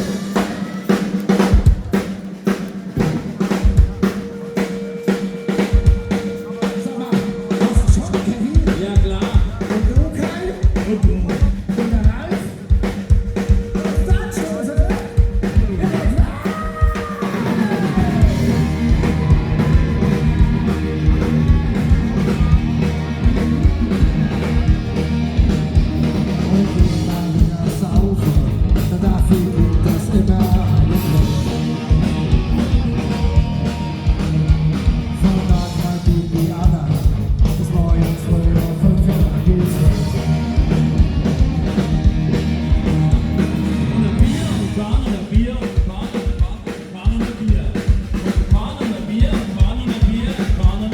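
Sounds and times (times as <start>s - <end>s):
live rock band playing: 0.0s - 50.9s
person singing: 13.7s - 24.7s, 26.2s - 33.7s.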